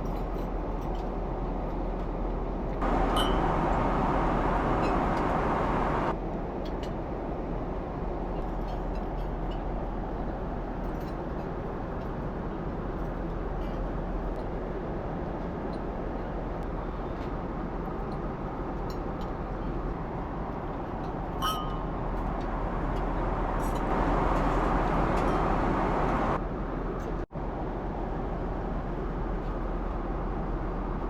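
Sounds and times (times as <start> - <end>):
jet airliner cabin noise: 0.0 - 6.2, 15.0 - 27.3.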